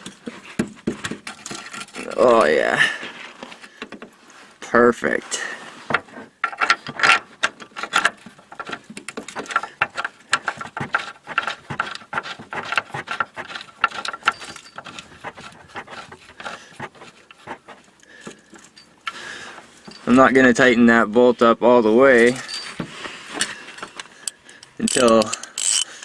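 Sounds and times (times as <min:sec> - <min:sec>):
hand tools clicking on metal bolt: 0:06.4 - 0:19.2, 0:23.4 - 0:26.0.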